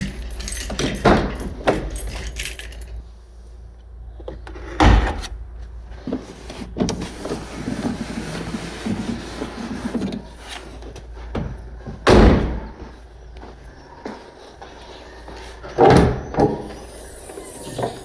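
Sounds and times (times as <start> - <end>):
metal objects jangling and clicking: 0.0 - 3.0.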